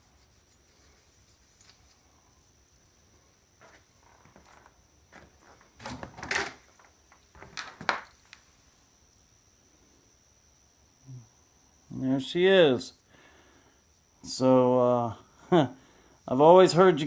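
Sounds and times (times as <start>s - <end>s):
metal and plastic parts clattering: 5.8s - 8.2s.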